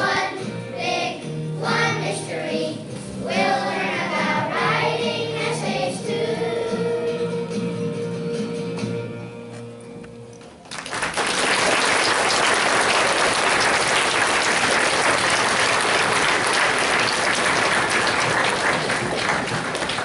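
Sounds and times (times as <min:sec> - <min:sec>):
children's choir singing: 0:00.0 - 0:07.5
audience applauding: 0:10.6 - 0:20.0.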